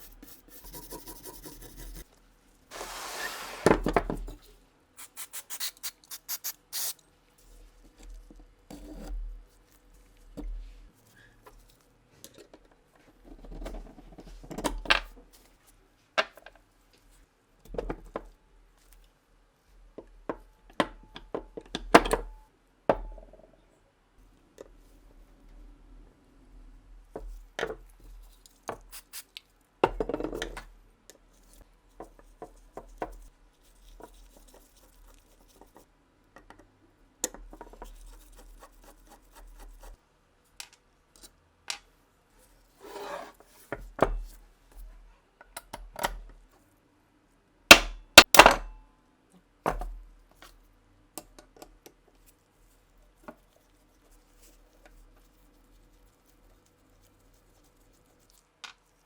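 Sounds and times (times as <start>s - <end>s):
short scraping rustles: 2.7s - 3.9s.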